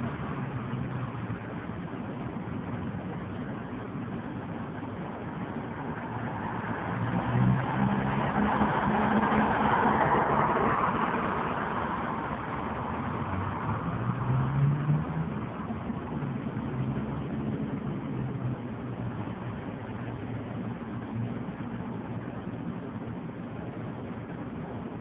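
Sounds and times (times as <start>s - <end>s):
car driving past: 6.0s - 18.6s.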